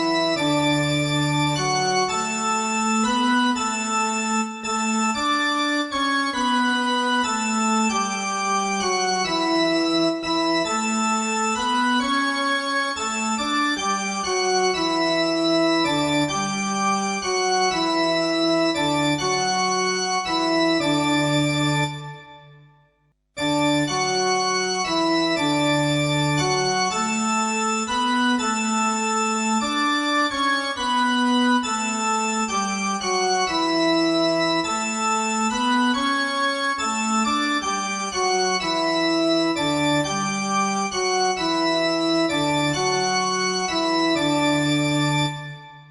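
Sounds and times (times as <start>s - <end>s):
organ chords: 0.0s - 22.6s, 23.4s - 45.9s.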